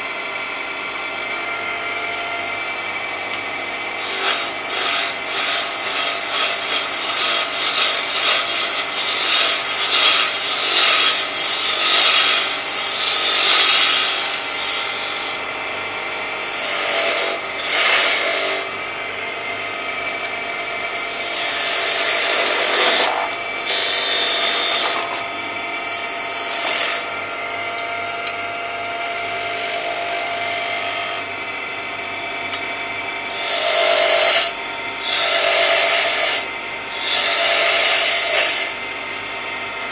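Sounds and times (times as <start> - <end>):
lathe running hum: 0.0 - 39.9
gouge scraping wood on lathe: 4.0 - 15.4, 16.4 - 18.7, 20.9 - 27.0, 33.3 - 38.8.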